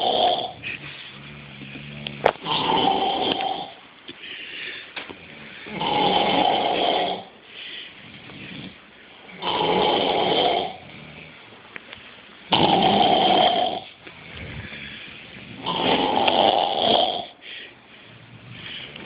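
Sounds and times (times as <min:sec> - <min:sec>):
loud rasping snores: 0:00.0 - 0:03.8, 0:05.2 - 0:07.3, 0:08.0 - 0:11.4, 0:12.5 - 0:14.7, 0:15.4 - 0:17.4
quiet breathing: 0:03.1 - 0:09.4, 0:13.8 - 0:19.0.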